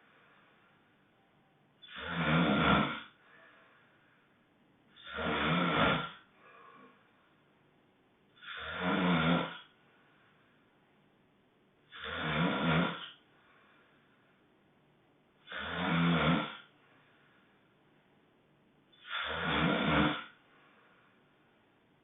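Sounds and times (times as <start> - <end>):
faint breathing: 0.0 - 0.9, 3.1 - 5.1, 6.2 - 7.5, 9.6 - 10.8, 13.0 - 14.5, 16.6 - 17.8, 20.3 - 21.6
loud honking snores: 1.8 - 3.2, 5.0 - 6.3, 8.4 - 9.8, 11.9 - 13.2, 15.4 - 16.7, 19.0 - 20.4.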